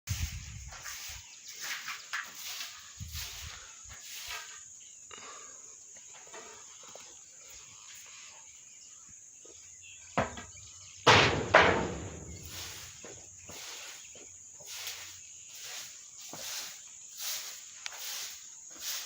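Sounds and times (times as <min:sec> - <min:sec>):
insects chirring: 0:00.2 - 0:19.0.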